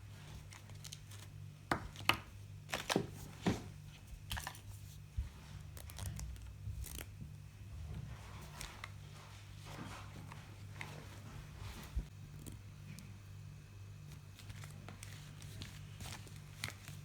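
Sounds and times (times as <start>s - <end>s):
faint steady hum: 0.0s - 17.0s
plastic packaging clicks and crinkling: 0.4s - 3.4s, 4.2s - 4.7s, 5.7s - 7.2s, 14.2s - 17.0s.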